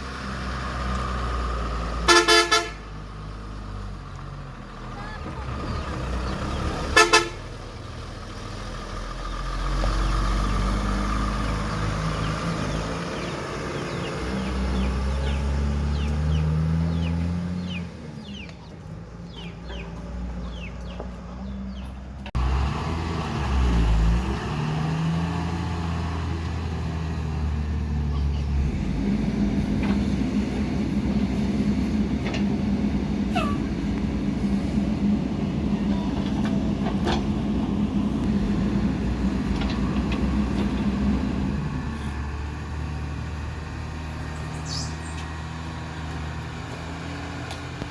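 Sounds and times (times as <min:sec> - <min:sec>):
backhoe diesel engine working: 0:00.0 - 0:47.9.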